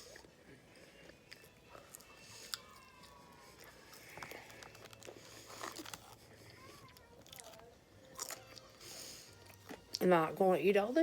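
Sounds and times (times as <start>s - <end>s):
person chewing food: 0.0s - 10.0s
small crunches and clicks: 3.6s - 8.6s.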